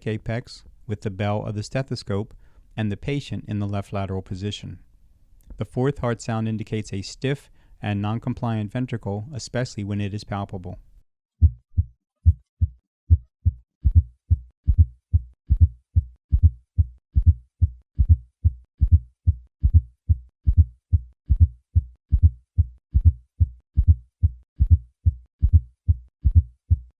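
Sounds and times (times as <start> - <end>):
low heartbeat thuds: 11.4 - 27.0.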